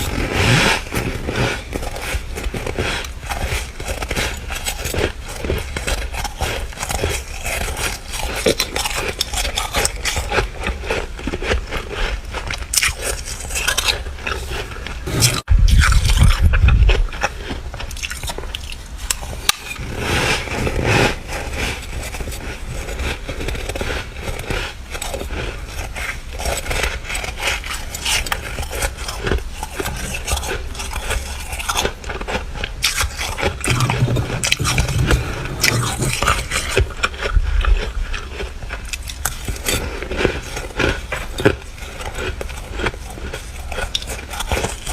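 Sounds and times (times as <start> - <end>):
frost crunching: 0.0 - 44.9
loud low rumble: 15.0 - 17.2.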